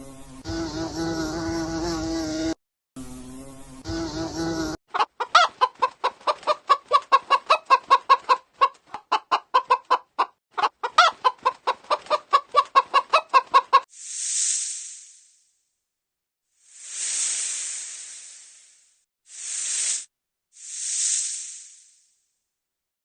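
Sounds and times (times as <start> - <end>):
buzzing drone: 0.0 - 4.8
chicken clucking: 4.9 - 13.9.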